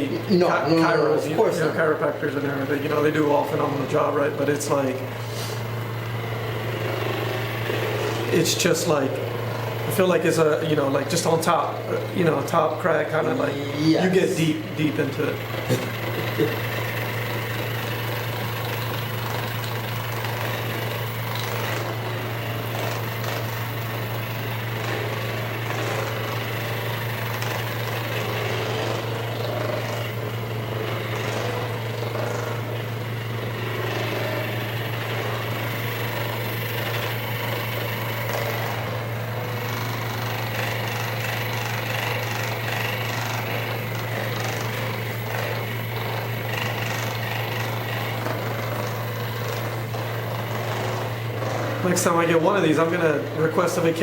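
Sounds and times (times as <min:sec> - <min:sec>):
percussion massager buzzing: 0:00.0 - 0:54.0.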